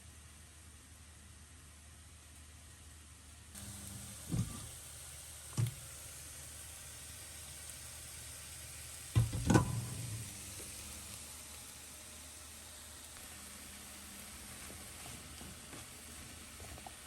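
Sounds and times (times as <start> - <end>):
food sizzling in a pan: 3.6 - 17.0.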